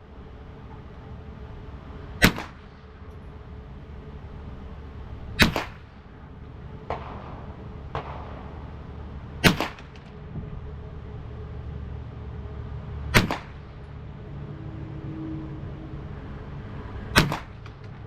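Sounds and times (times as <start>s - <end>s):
gunshots with short echo: 5.4s - 5.8s, 6.9s - 8.7s, 9.4s - 10.1s.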